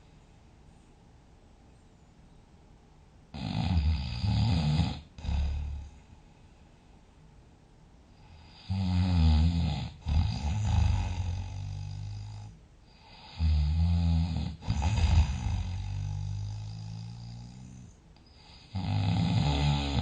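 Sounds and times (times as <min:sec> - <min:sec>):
loud rattling snoring: 0:03.4 - 0:05.9, 0:08.5 - 0:20.0.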